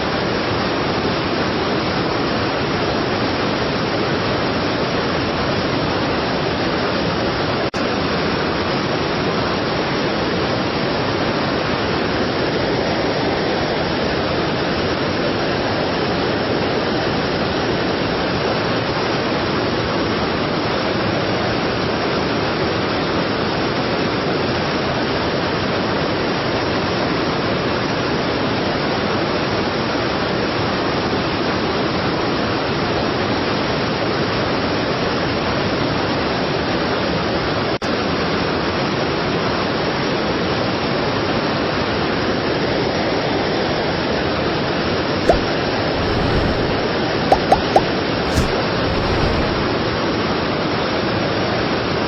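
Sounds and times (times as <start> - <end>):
brief click: 45.3 - 49.6.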